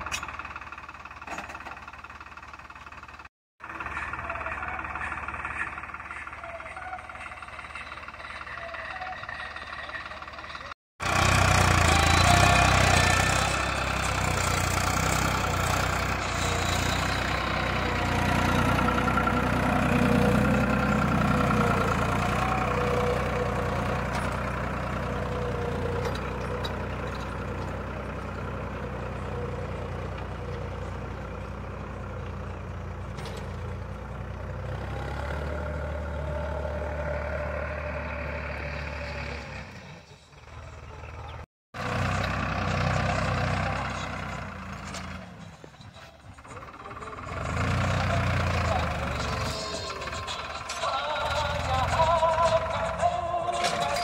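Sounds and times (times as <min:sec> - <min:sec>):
tractor engine running: 0:00.0 - 0:54.0.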